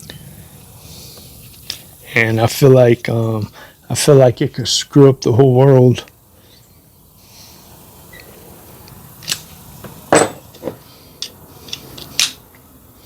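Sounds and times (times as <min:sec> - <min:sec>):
hand tools clicking and knocking: 0:09.2 - 0:12.4.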